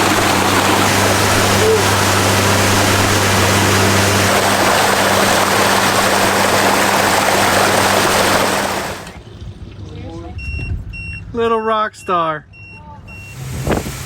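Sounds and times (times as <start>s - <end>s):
outboard motor humming: 0.0s - 9.8s
water rushing: 0.0s - 9.9s.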